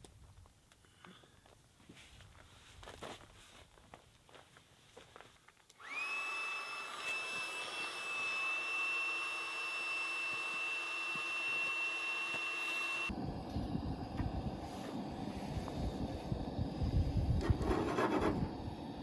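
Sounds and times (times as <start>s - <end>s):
electric blower motor whining: 5.8s - 15.2s.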